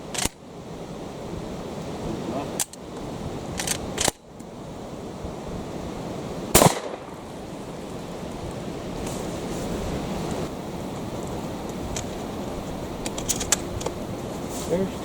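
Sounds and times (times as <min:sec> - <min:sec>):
wind noise on microphone: 0:00.0 - 0:15.0
gunshots: 0:06.6 - 0:07.4.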